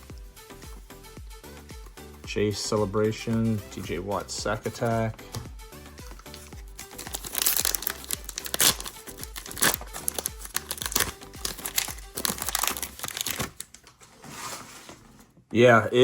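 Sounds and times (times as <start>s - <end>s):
quiet background music: 0.0s - 16.0s
foil wrapper tearing and crinkling: 6.1s - 13.7s.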